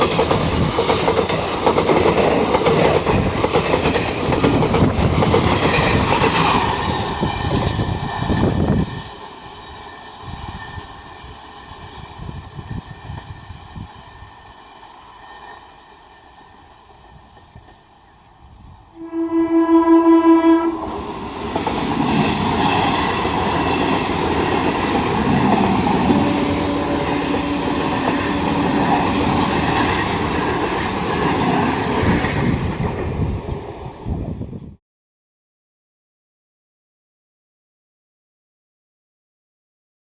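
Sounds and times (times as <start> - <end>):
train passing close by: 0.0 - 34.8
train horn: 19.0 - 21.2, 25.7 - 29.2.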